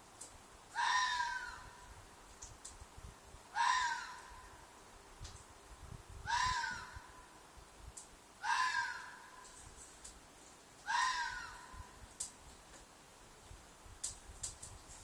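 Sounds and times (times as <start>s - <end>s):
fox screaming: 0.8s - 1.7s, 3.6s - 4.4s, 6.3s - 7.0s, 8.4s - 9.3s, 10.9s - 11.8s.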